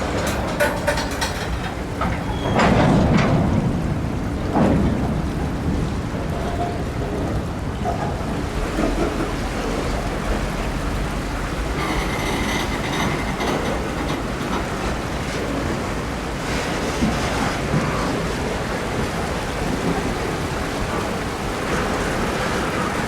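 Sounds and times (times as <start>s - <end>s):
freight train rumbling: 0.0s - 23.0s
high wheel squeal: 2.1s - 2.7s, 11.6s - 15.2s.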